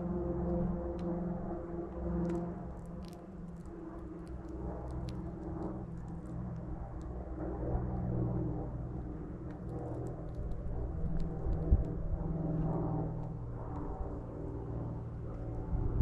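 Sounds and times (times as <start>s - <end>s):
low motor-like hum: 0.0s - 16.0s.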